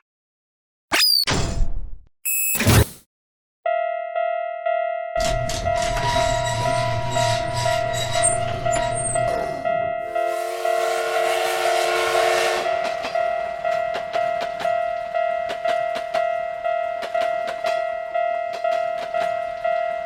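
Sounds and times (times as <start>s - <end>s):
level crossing bell ringing: 3.7s - 11.0s, 12.7s - 20.0s
train horn: 10.0s - 13.2s.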